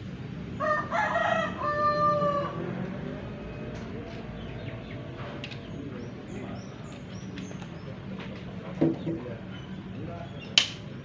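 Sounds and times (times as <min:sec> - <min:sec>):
rooster crowing: 0:00.6 - 0:02.9.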